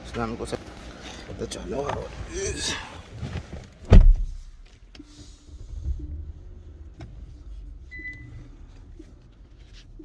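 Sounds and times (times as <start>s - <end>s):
low rumble inside car cabin: 3.8s - 10.0s.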